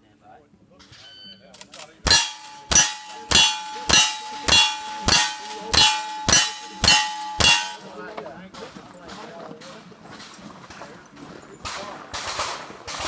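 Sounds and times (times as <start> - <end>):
steel targets ringing: 2.1 - 8.1.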